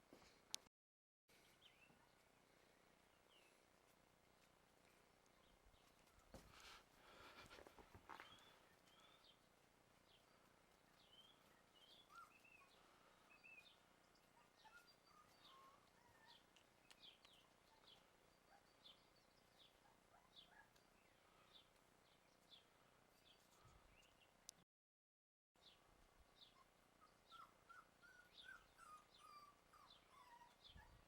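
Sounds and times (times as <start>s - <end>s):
small animals chirping and squeaking: 5.5s - 21.8s.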